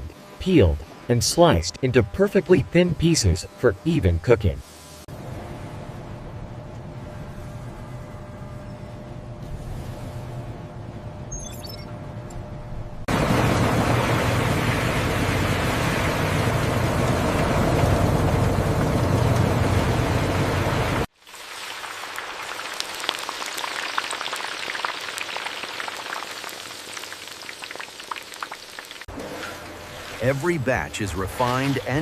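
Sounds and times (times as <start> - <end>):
low hum: 0.0 - 21.1
oil sizzling with frying potatoes: 20.8 - 29.1.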